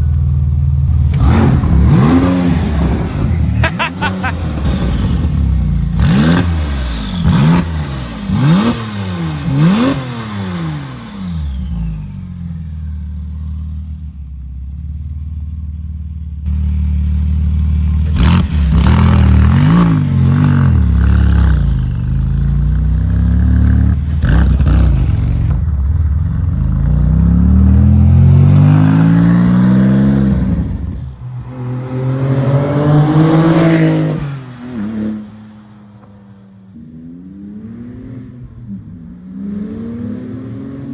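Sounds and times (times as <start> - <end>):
sports car engine revving: 0.8 - 15.4, 16.4 - 35.3
exhaust cracks: 17.8 - 28.2.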